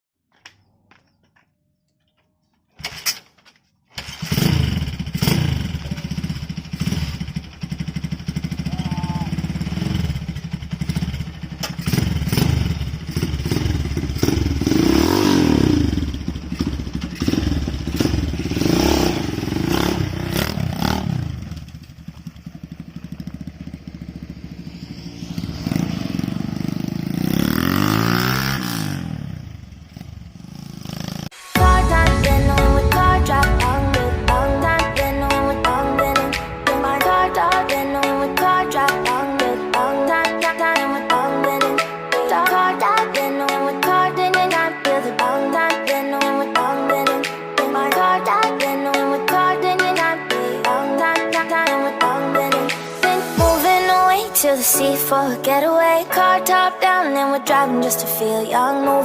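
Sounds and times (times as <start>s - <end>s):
engine running: 4.1s - 39.5s.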